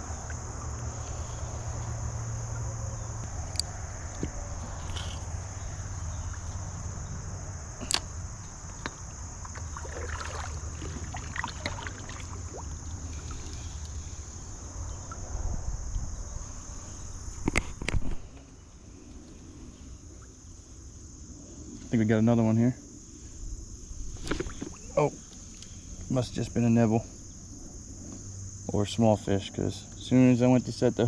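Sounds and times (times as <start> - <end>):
high-pitched insect chorus: 0.0 - 31.0.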